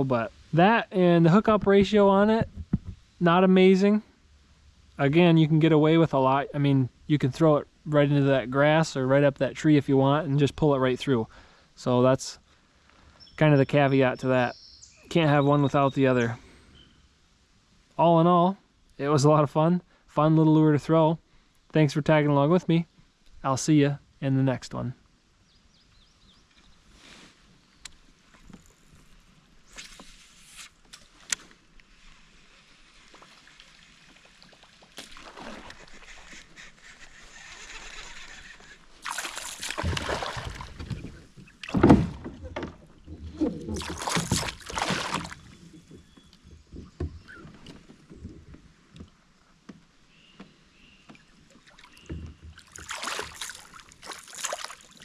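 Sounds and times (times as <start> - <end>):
river water splashing: 32.0 - 45.8, 51.4 - 55.0.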